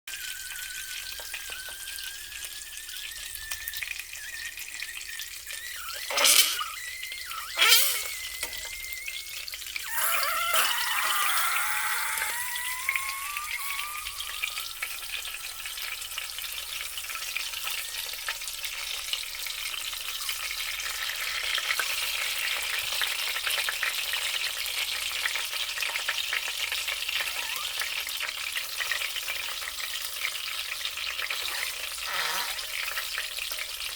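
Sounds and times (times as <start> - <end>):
fart-like sputters: 0.1 - 15.8, 27.2 - 28.0, 31.2 - 33.1
thin rising whistling tone: 0.1 - 16.9, 27.3 - 27.8
sausages sizzling in a frying pan: 0.1 - 33.9.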